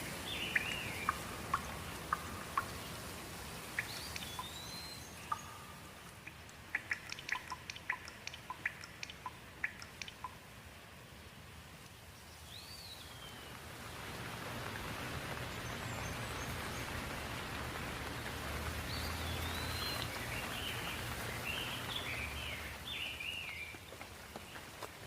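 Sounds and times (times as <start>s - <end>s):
bird calling: 0.0s - 3.0s, 3.6s - 10.4s, 18.2s - 23.8s
steady rain falling: 0.0s - 25.0s.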